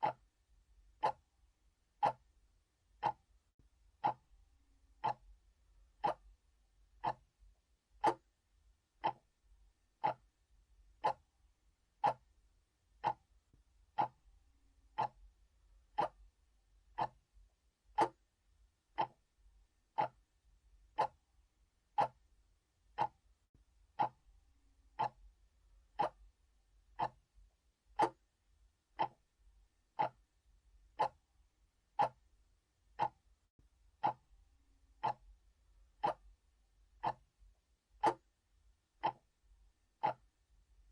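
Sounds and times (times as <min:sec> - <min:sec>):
clock ticking: 0:00.0 - 0:00.3, 0:00.9 - 0:01.3, 0:01.9 - 0:02.3, 0:02.9 - 0:03.3, 0:03.9 - 0:04.3, 0:05.0 - 0:05.3, 0:05.9 - 0:06.4, 0:07.0 - 0:07.3, 0:08.0 - 0:08.3, 0:09.0 - 0:09.4, 0:10.0 - 0:10.3, 0:11.0 - 0:11.3, 0:11.9 - 0:12.4, 0:13.0 - 0:13.3, 0:13.9 - 0:14.3, 0:14.9 - 0:16.3, 0:16.9 - 0:17.3, 0:17.9 - 0:18.3, 0:18.9 - 0:19.3, 0:19.9 - 0:20.3, 0:20.9 - 0:21.2, 0:21.9 - 0:22.3, 0:22.9 - 0:23.2, 0:23.9 - 0:24.3, 0:24.9 - 0:25.3, 0:25.9 - 0:27.3, 0:27.9 - 0:28.3, 0:28.9 - 0:29.3, 0:29.9 - 0:31.3, 0:31.9 - 0:32.3, 0:32.9 - 0:33.3, 0:34.0 - 0:36.4, 0:37.0 - 0:37.4, 0:38.0 - 0:38.4, 0:39.0 - 0:40.5.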